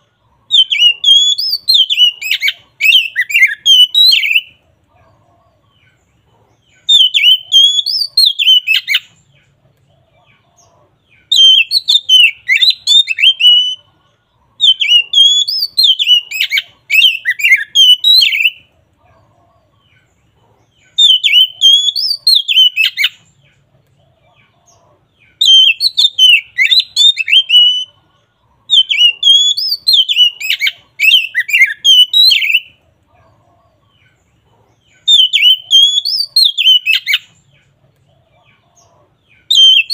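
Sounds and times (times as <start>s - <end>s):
bird singing whistled notes: 0.5s - 4.6s, 6.7s - 9.3s, 11.1s - 13.9s, 14.6s - 18.7s, 20.8s - 23.4s, 25.2s - 28.0s, 28.7s - 32.8s, 34.9s - 37.4s, 39.4s - 39.9s.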